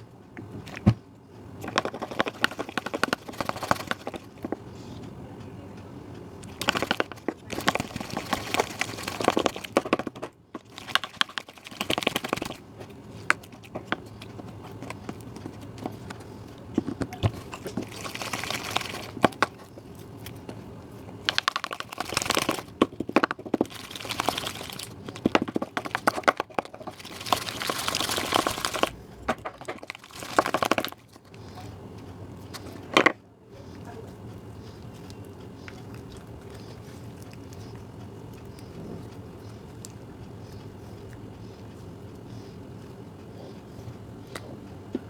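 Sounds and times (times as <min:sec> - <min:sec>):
slime crackling and popping: 0:21.2 - 0:29.0.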